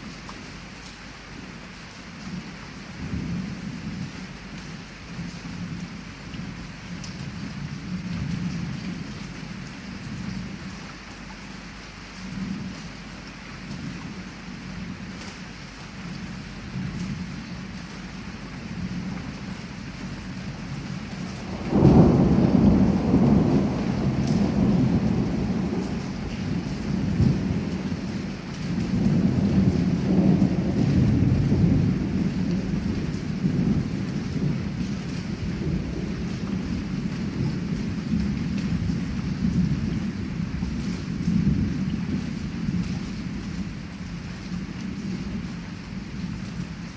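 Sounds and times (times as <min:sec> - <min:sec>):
heavy rain at a window: 0:00.0 - 0:46.9
low rolls of thunder: 0:16.1 - 0:46.9.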